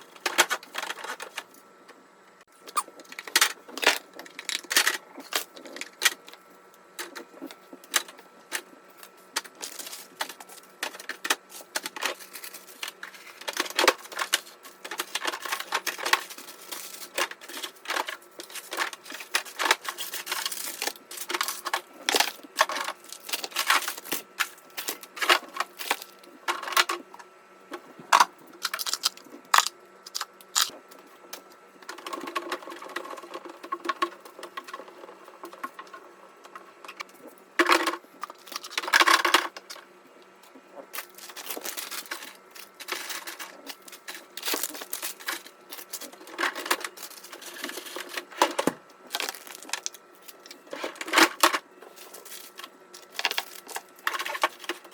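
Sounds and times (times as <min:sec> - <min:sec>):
faint steady hum: 0:00.0 - 0:54.9
hard objects clicking and clattering: 0:27.8 - 0:39.9, 0:40.9 - 0:54.9.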